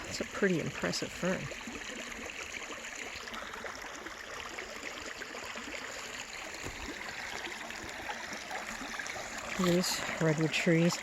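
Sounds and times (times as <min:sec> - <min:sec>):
stream rushing over rocks: 0:05.2 - 0:11.0.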